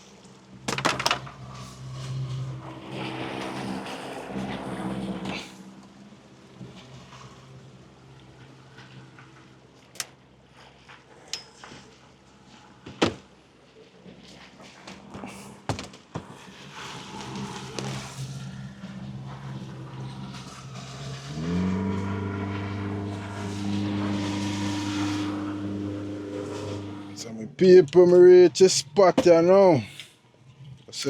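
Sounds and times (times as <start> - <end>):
small boat engine running: 0.0 - 14.6, 16.4 - 31.0
water splashing along hull: 1.3 - 11.1, 16.6 - 27.3.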